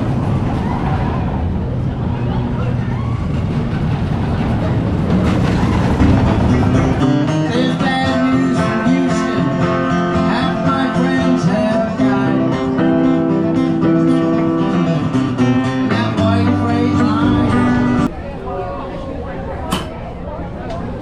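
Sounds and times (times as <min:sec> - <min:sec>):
low rumble: 0:00.0 - 0:09.4
acoustic guitar music: 0:05.1 - 0:18.1.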